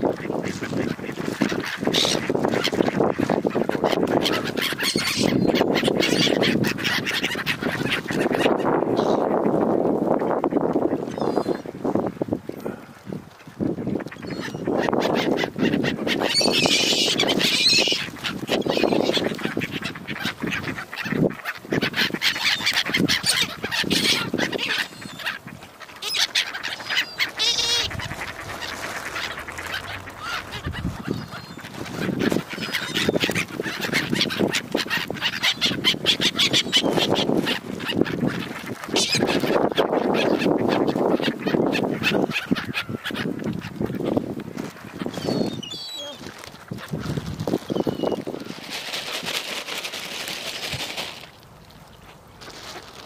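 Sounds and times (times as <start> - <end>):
gulls calling: 0.0 - 9.5, 14.0 - 48.6
ducks quacking: 0.0 - 11.8, 12.6 - 48.5.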